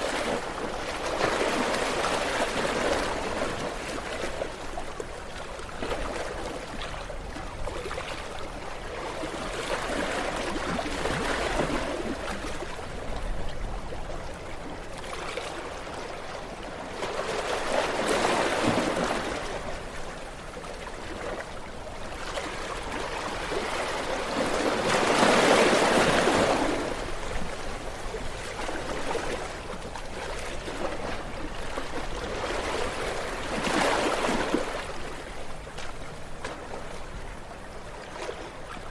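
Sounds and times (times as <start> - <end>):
ocean waves breaking on shore: 0.0 - 38.9.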